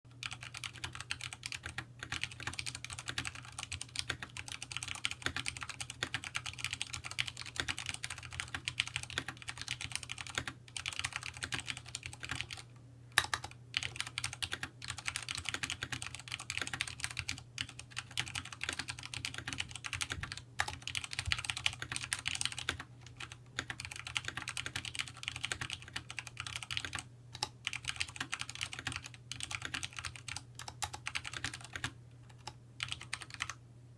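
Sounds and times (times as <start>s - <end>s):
mechanical keyboard typing: 0.1s - 12.6s, 13.2s - 33.6s
faint low hum: 0.1s - 33.9s.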